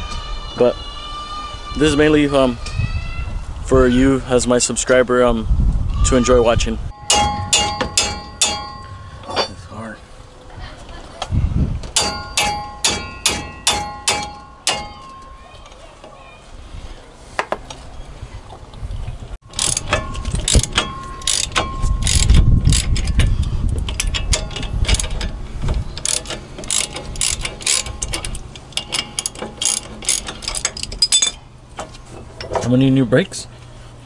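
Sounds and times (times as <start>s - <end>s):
low rumble: 6.6s - 13.6s
ratchet wrench clicking: 19.5s - 25.3s, 26.0s - 31.4s.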